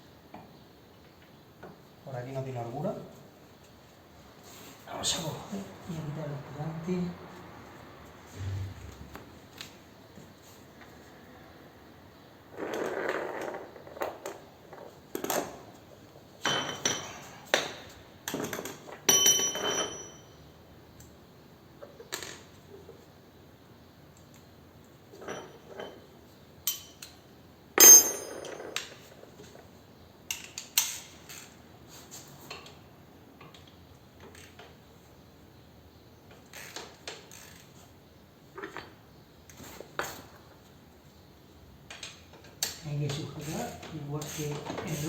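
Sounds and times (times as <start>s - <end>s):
hand tools clinking on metal: 27.8s - 28.8s.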